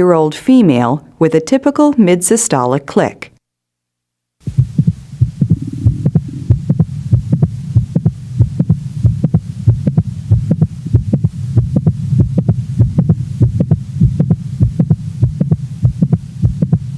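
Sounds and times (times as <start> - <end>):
heart click: 4.4 - 16.9
heartbeat through stethoscope: 4.4 - 16.9
steady low hum: 4.4 - 16.9.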